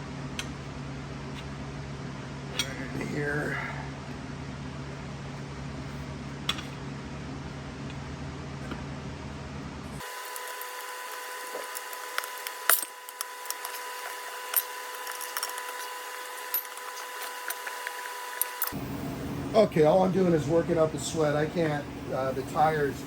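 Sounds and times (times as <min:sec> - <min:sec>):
steady hum: 0:00.0 - 0:23.0
tire irons clinking and scraping: 0:10.0 - 0:18.8.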